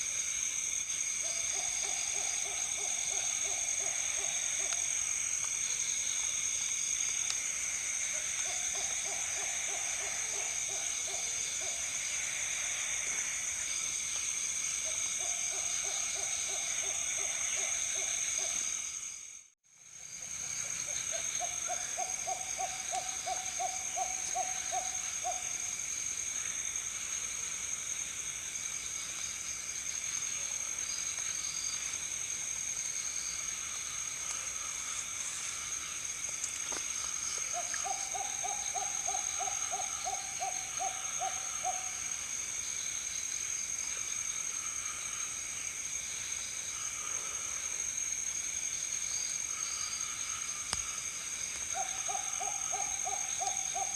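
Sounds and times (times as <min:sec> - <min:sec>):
night insects buzzing: 0:00.0 - 0:53.9
night bird hooting: 0:20.9 - 0:25.6, 0:37.5 - 0:42.1, 0:51.7 - 0:53.9.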